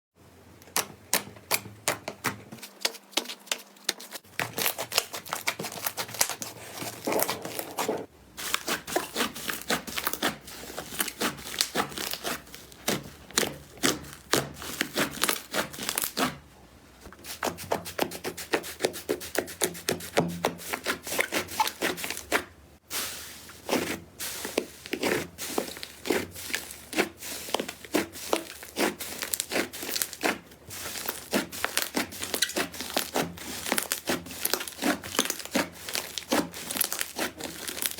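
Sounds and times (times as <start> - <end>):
slime squeezed by hand: 23.0 - 37.9.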